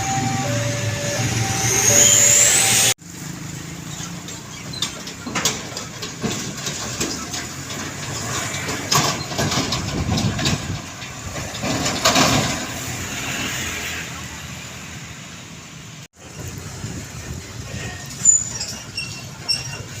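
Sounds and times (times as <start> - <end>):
truck engine running: 0.0 - 12.9.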